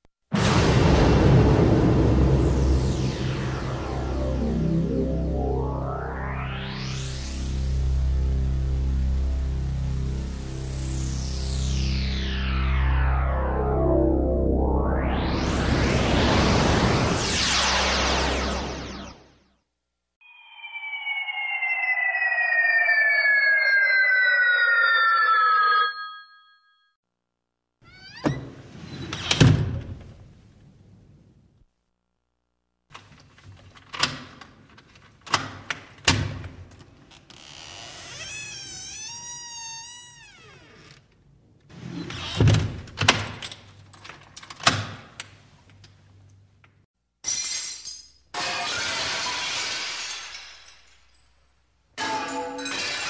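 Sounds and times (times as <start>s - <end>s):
siren-like tone gliding down: 2.1s - 19.4s, 20.2s - 26.6s.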